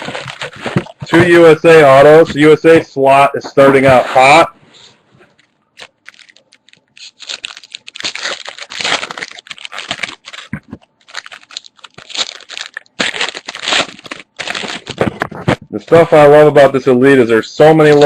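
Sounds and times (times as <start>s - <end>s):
plastic and card packaging rustling: 0.0s - 2.6s, 5.2s - 16.5s, 17.6s - 18.0s.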